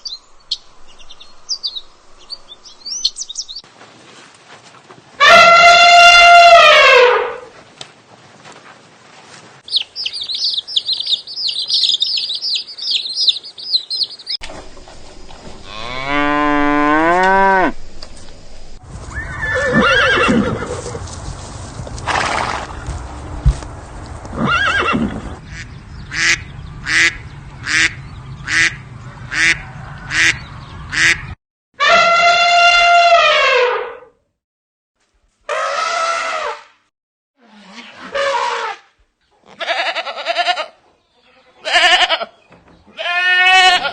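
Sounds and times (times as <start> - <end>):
high busy chirping: 9.7 - 14.4.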